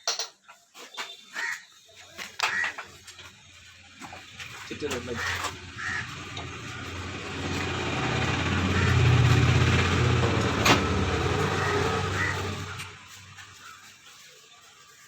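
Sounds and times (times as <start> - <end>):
vehicle engine humming: 2.5 - 13.9.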